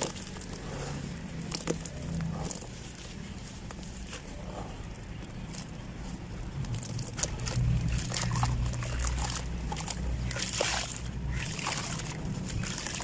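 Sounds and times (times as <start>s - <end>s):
cement chunks crumbling by hand: 0.0s - 0.7s.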